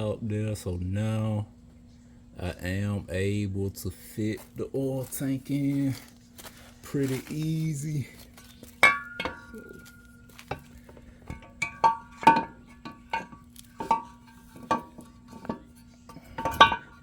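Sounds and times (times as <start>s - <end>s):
metallic clinks and knocks: 11.3s - 17.0s.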